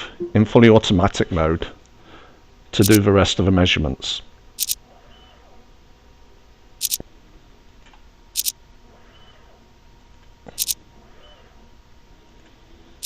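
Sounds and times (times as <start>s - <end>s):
machine hum: 2.8s - 3.0s, 4.6s - 4.8s, 6.7s - 7.6s, 8.2s - 11.2s.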